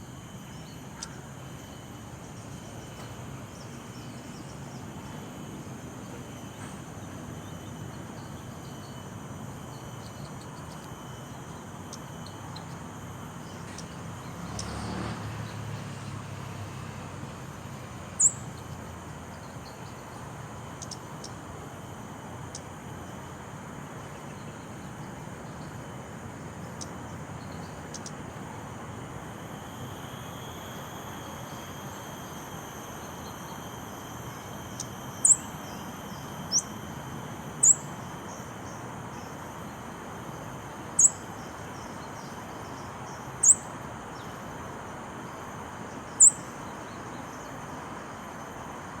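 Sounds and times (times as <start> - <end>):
insects droning: 0.0 - 49.0
bird high-pitched call notes: 34.8 - 36.7, 37.6 - 37.9.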